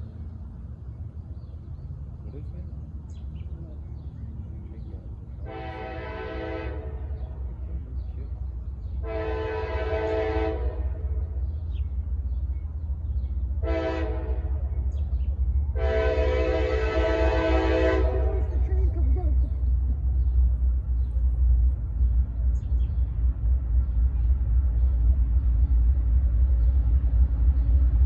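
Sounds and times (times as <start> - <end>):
train rumble: 0.0 - 28.0
locomotive air horn blasts: 5.4 - 7.2, 9.0 - 11.2, 13.6 - 14.6, 15.7 - 18.6.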